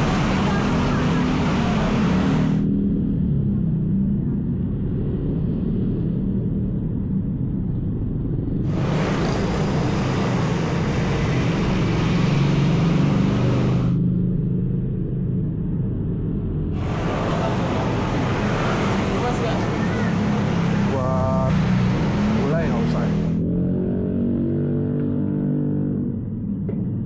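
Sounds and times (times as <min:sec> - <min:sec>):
low motor hum: 0:00.0 - 0:24.0
broad hiss: 0:16.8 - 0:23.2.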